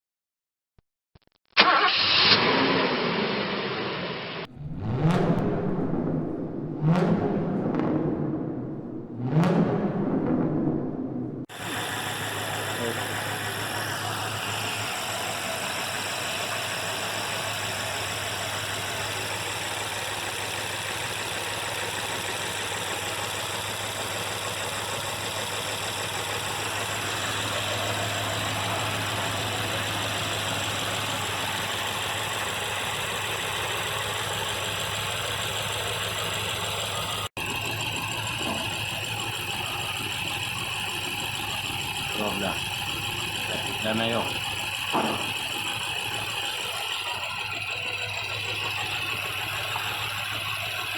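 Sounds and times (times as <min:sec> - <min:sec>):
car engine idling: 0:11.5 - 0:50.9.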